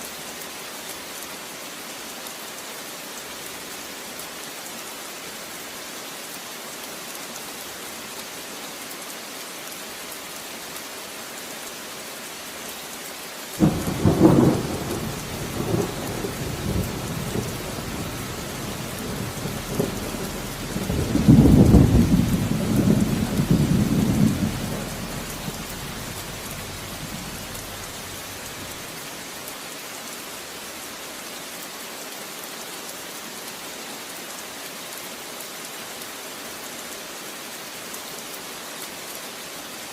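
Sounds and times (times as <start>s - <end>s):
steady rain falling: 0.0s - 39.9s
thunderclap and rumbling thunder: 13.6s - 28.8s.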